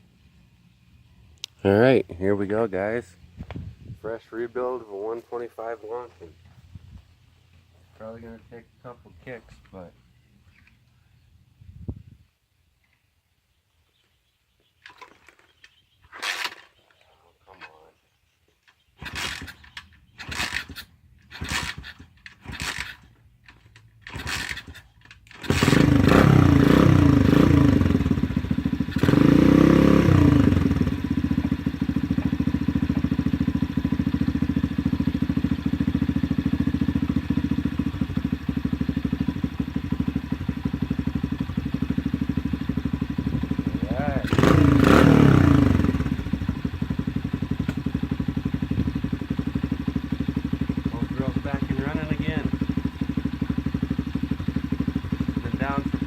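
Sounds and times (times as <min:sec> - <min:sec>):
dirt bike being kick-started: 0:14.8 - 0:16.8, 0:18.7 - 0:31.0, 0:44.2 - 0:46.6
dirt bike engine idling: 0:18.7 - 0:56.0
dirt bike engine revving: 0:19.0 - 0:23.2, 0:24.0 - 0:24.8, 0:25.4 - 0:56.0.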